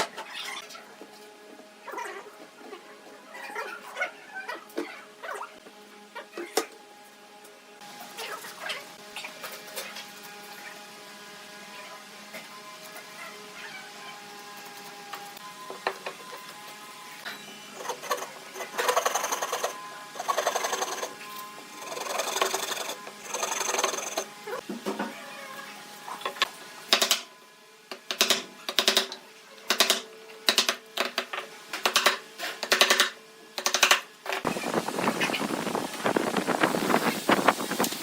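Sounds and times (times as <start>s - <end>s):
rasping strokes on wood: 17.8s - 21.2s, 21.8s - 24.3s
steady hiss: 34.5s - 38.0s.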